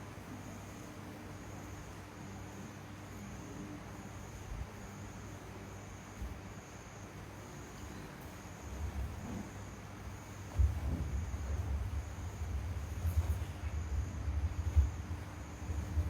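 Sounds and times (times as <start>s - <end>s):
crickets trilling: 0.1s - 16.0s
low hum: 10.5s - 16.0s.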